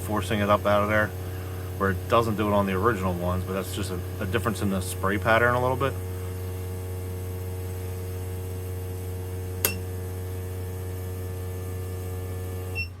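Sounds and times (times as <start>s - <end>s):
test bench hum: 0.0s - 13.0s
sharp metallic clink: 9.6s - 9.8s.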